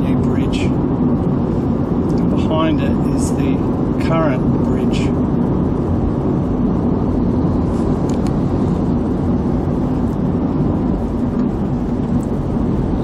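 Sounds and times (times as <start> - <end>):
car road and engine rumble: 0.0 - 13.0.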